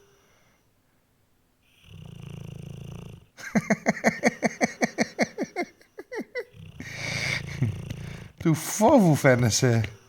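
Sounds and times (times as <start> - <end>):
dog snoring loudly: 1.7 - 3.4, 6.5 - 8.4.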